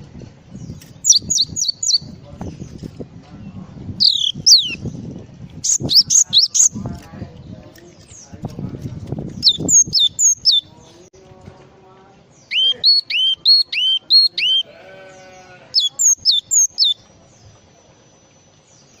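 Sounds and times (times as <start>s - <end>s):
bird whistling clear notes: 4.0s - 4.8s, 12.5s - 14.6s.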